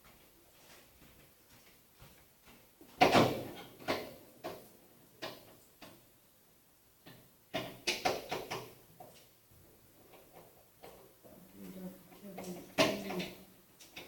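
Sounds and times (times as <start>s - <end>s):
sharp knocks and clunks: 3.0s - 4.6s.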